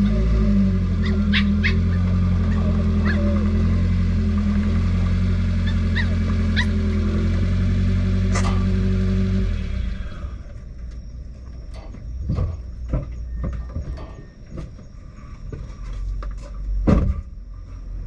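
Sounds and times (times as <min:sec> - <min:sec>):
dog yelping: 0:01.0 - 0:03.6, 0:05.6 - 0:06.8.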